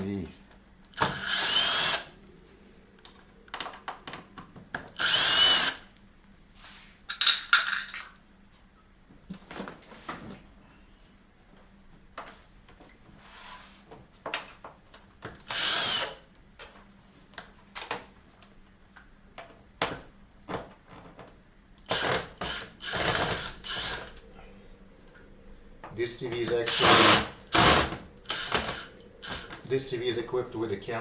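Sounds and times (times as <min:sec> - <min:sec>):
screwdriver driving screws: 0:05.0 - 0:05.8, 0:26.7 - 0:29.5.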